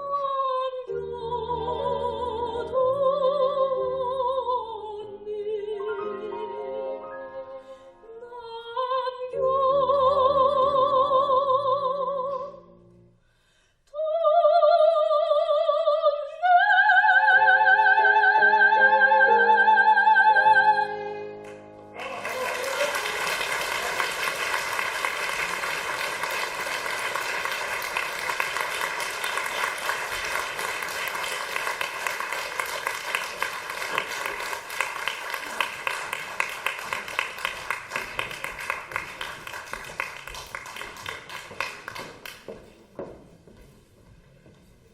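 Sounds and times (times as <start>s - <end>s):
soprano singing with vibrato: 0.0s - 12.8s, 13.9s - 21.3s
piano: 0.0s - 43.4s
audience applause: 21.9s - 42.5s.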